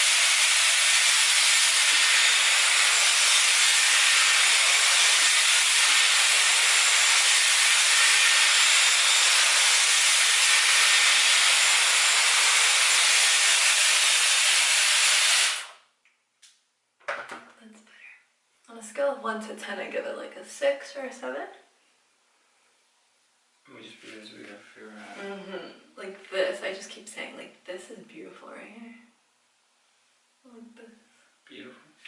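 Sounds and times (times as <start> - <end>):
hair styler blowing air: 0.0 - 15.8.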